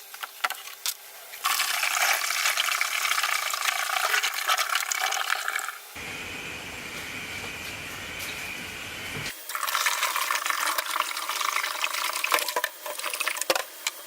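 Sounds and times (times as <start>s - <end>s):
water pouring into container: 1.4s - 5.8s, 9.4s - 13.6s.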